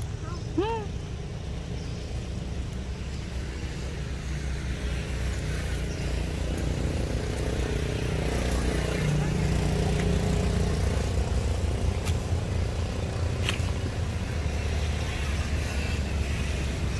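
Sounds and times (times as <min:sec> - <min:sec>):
engine low rumble: 0:00.0 - 0:16.9.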